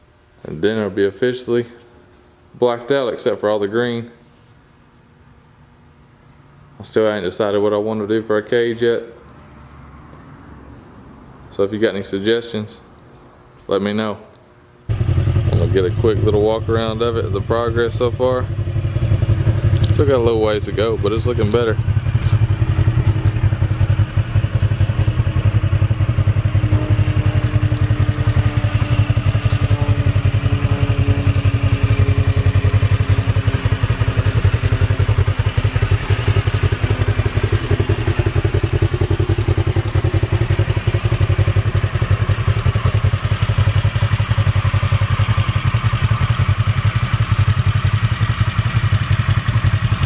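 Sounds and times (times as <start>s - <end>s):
engine idling: 14.9s - 50.0s.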